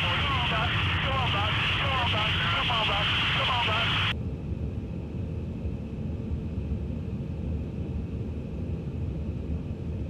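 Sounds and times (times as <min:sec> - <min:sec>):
high-pitched whine: 0:00.0 - 0:04.2
aircraft engines rumbling: 0:00.0 - 0:10.0.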